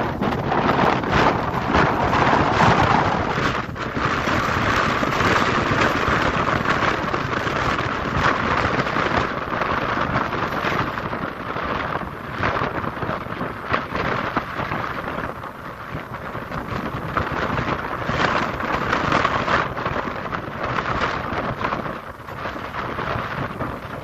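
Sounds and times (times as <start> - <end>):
strong wind buffeting microphone: 0.0 - 24.0.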